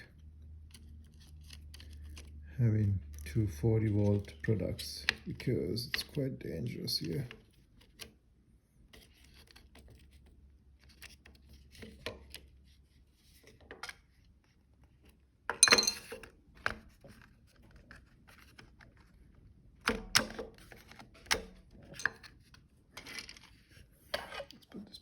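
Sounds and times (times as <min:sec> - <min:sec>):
tools clattering on workbench: 0:15.5 - 0:16.3.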